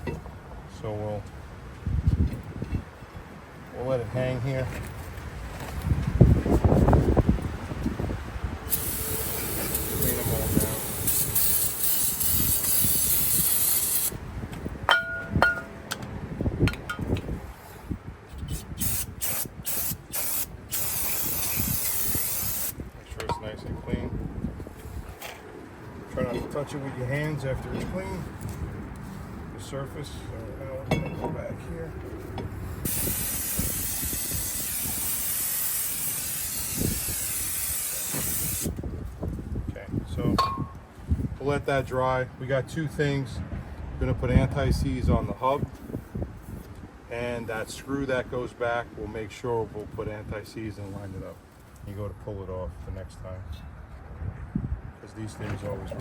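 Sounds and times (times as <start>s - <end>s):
aerosol spray hissing: 8.7s - 14.2s, 18.8s - 22.8s, 32.8s - 38.7s
short spurts of spray: 8.7s - 14.2s, 18.4s - 22.8s, 32.8s - 38.8s.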